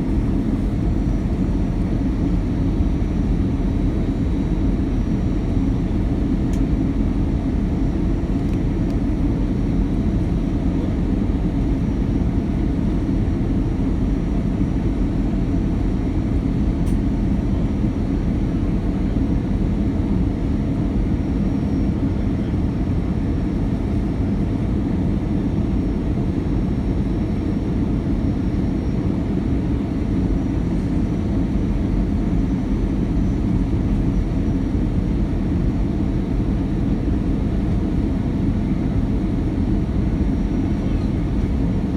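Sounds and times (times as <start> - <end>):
aircraft cabin engine rumble: 0.0 - 41.9.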